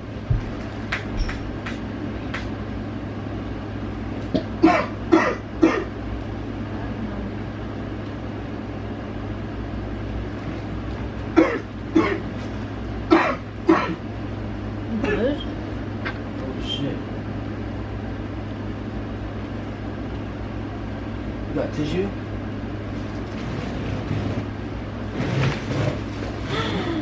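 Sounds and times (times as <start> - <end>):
steady low hum: 0.0 - 27.0
man coughing: 4.6 - 6.0, 11.4 - 12.3, 13.1 - 14.0.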